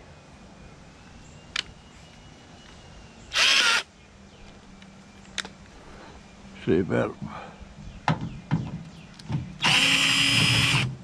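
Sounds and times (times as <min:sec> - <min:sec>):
screw gun running: 0:03.4 - 0:03.8, 0:09.6 - 0:10.9.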